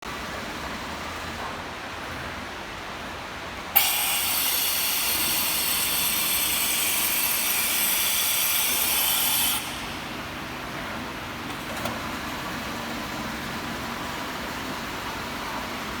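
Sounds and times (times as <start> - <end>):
machine tool hissing and whining: 3.8 - 10.9.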